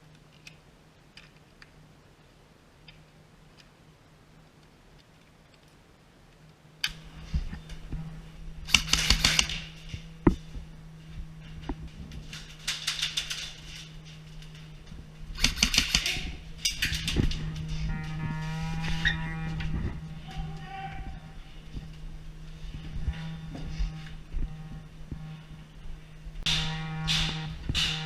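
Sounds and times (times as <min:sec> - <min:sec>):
steady low hum: 0:05.8 - 0:28.0
airsoft gun automatic bursts: 0:08.6 - 0:10.2, 0:12.3 - 0:14.6, 0:15.3 - 0:17.5.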